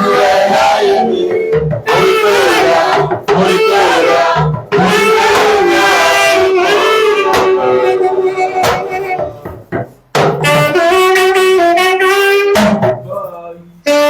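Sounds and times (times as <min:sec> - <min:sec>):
low drum beat: 0:00.0 - 0:11.2.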